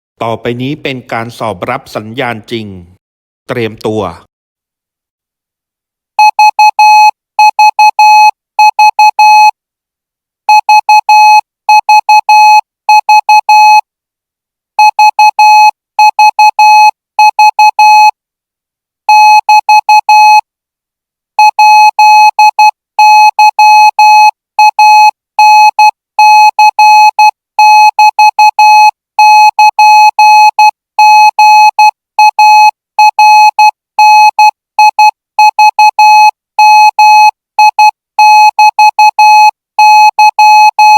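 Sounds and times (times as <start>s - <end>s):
morse code tone: 19.1s - 20.4s, 21.4s - 40.9s.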